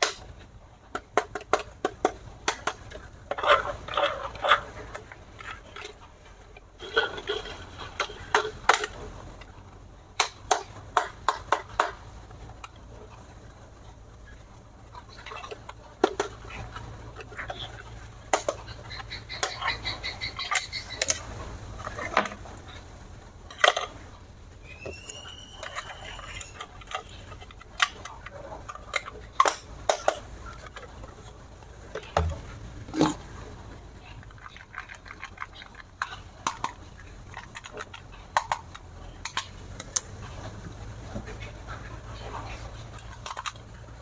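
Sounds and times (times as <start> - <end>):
hard objects clicking and knocking: 31.9 - 33.4.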